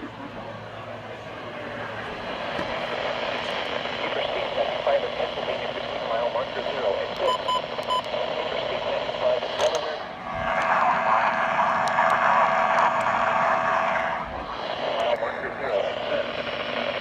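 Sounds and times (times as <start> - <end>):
radio hiss and static: 0.0 - 17.0
short electronic beeps: 7.2 - 8.1.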